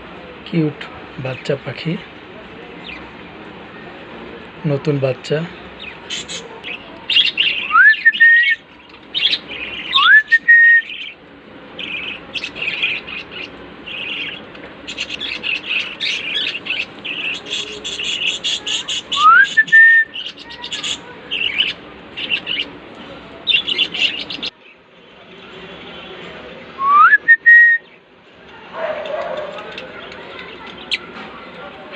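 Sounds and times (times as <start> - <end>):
budgerigars chirping and chattering: 5.8 - 11.2, 11.8 - 19.3, 20.1 - 24.8
rising bird whistles: 7.6 - 8.6, 9.9 - 11.0, 19.1 - 20.2, 26.8 - 27.9.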